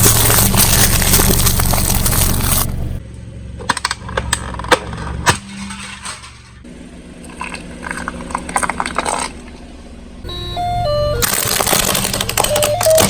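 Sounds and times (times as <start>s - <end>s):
car tyre crushing brittle objects: 0.0s - 3.0s, 3.6s - 10.2s, 11.2s - 13.0s
car engine hum: 0.0s - 13.0s
electronic tone tune: 10.2s - 11.3s.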